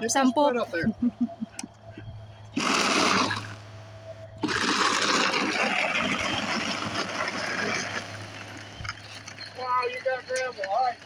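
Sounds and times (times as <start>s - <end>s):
gravel scraping and rattling: 2.4s - 11.0s.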